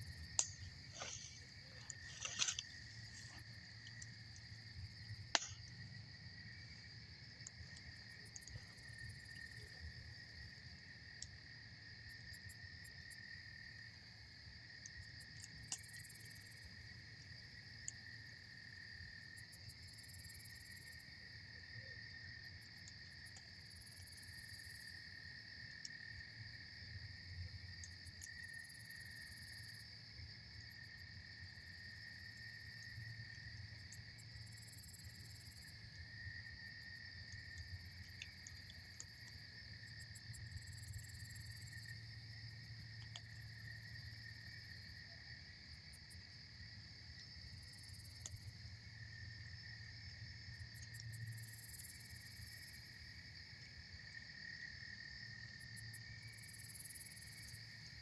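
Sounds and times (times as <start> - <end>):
campfire crackling and popping: 0.0 - 6.2, 14.9 - 16.2, 37.1 - 39.5, 42.9 - 43.5
crickets trilling: 0.0 - 58.0.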